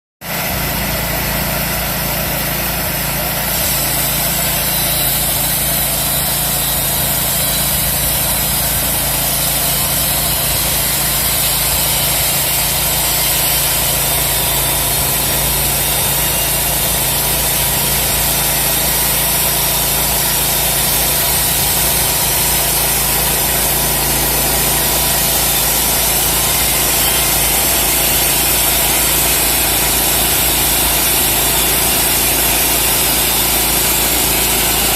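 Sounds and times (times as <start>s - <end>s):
sawmill engine running: 0.2s - 34.9s.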